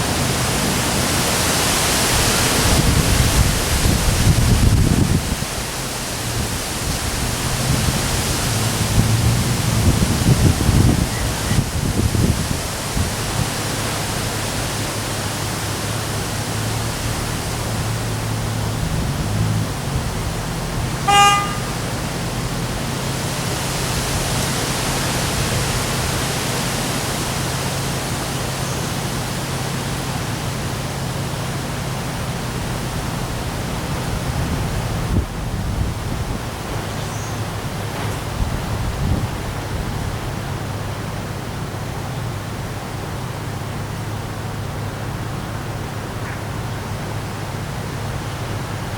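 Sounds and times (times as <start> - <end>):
high wind: 0.0 - 48.9
rain: 0.0 - 48.9
car horn toot: 21.0 - 22.1.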